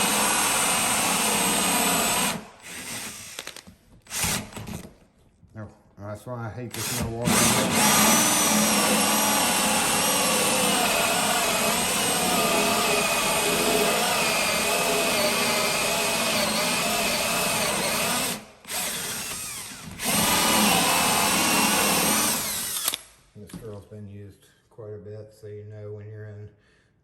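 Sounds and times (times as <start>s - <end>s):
power drill boring through wood: 0.0s - 4.9s, 6.7s - 23.1s.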